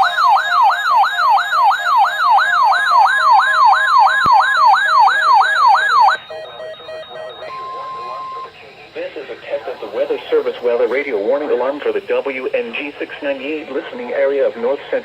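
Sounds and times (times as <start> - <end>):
electronic siren alarm tone: 0.0 - 8.6
faint steady electronic tones: 0.0 - 15.0.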